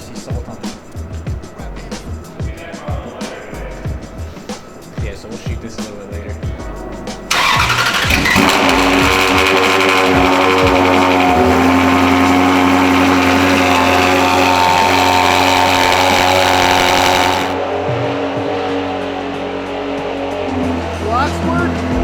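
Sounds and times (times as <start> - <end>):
car engine starting and idling: 7.3 - 17.6.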